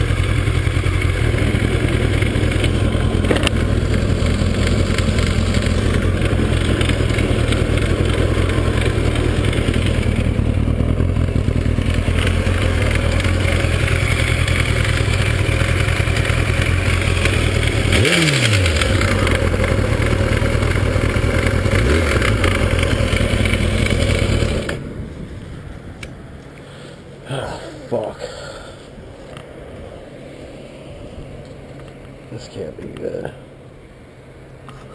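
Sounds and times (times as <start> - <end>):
motorcycle engine knocking: 0.0 - 24.3.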